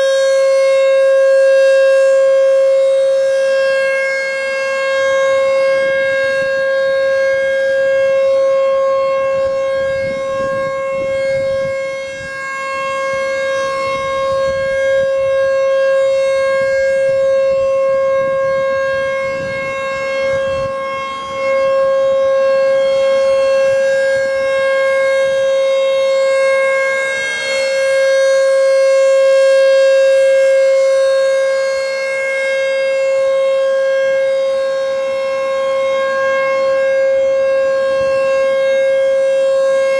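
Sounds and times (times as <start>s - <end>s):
rotating warning siren steady tone: 0.0s - 39.9s.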